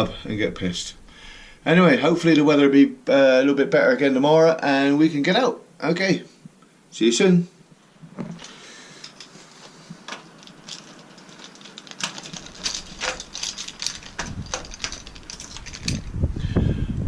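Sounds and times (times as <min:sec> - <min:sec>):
metallic clicks and rattles: 0:08.4 - 0:09.4, 0:10.0 - 0:16.2.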